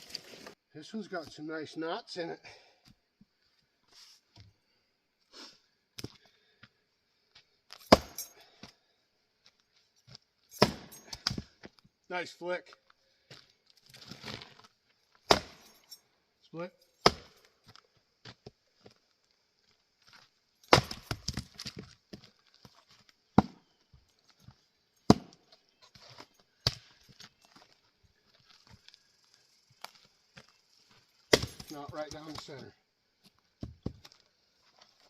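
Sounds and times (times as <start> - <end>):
axe chopping wood: 7.9 - 8.2, 10.6 - 11.4, 15.2 - 15.7, 17.0 - 17.5, 20.7 - 21.8, 23.4 - 23.6, 25.1 - 25.4, 31.3 - 32.5.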